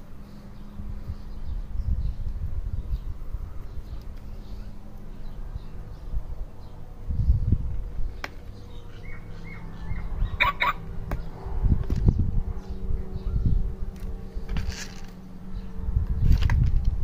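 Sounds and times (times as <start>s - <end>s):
bird chirping: 0.0s - 11.4s, 12.0s - 16.3s
low rumbling: 0.0s - 17.0s.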